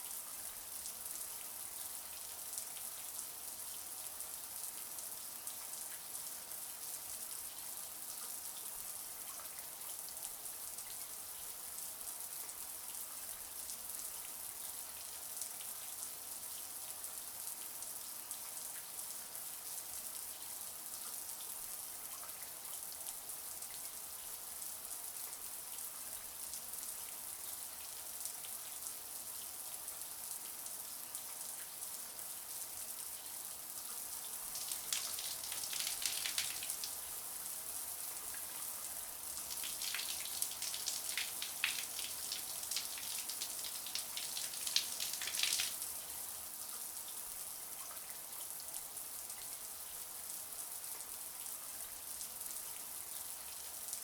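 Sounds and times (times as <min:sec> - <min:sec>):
shower water running: 0:34.4 - 0:37.1, 0:39.3 - 0:45.8.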